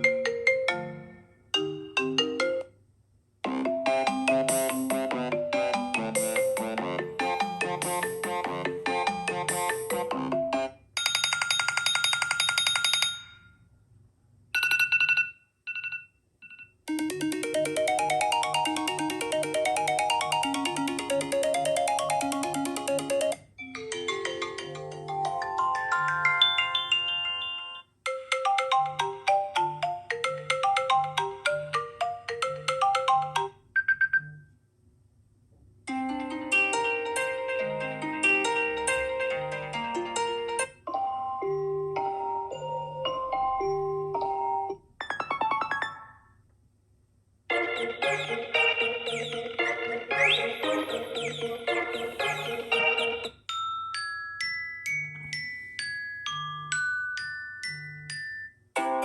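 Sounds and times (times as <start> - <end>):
melodic ringtone with beat: 0.0 - 2.8, 3.5 - 13.5, 14.6 - 34.5, 35.9 - 46.4, 47.5 - 59.0
fast trilling ringtone: 3.8 - 13.5, 16.9 - 34.3, 45.0 - 46.3, 47.7 - 54.4.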